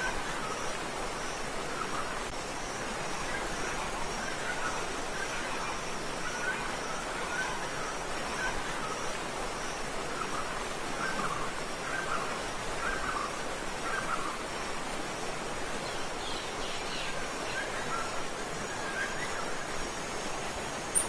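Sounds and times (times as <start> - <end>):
waterfall rushing water: 0.0 - 21.0.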